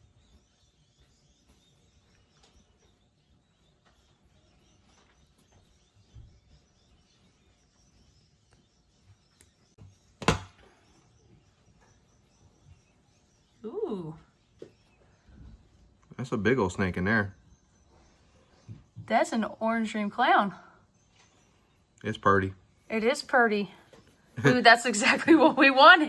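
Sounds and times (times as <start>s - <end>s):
sharp knock: 10.2s - 10.6s.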